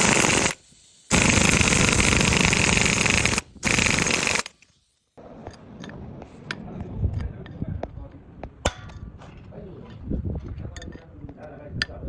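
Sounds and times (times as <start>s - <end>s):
power tool rattling: 0.0s - 4.6s.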